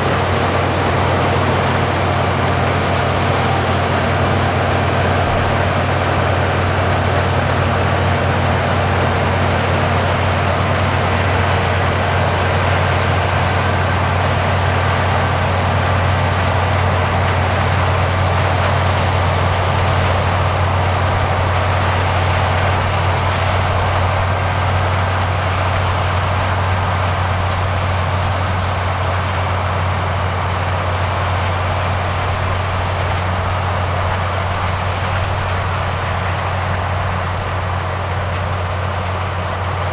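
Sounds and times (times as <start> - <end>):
combine harvester droning: 0.0 - 39.9.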